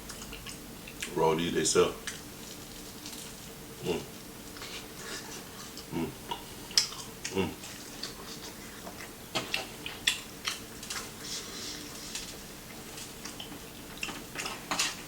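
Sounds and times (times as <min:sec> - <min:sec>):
chewing and crunching: 0:00.0 - 0:01.2, 0:02.0 - 0:15.0
low hums of enjoyment: 0:03.6 - 0:09.3.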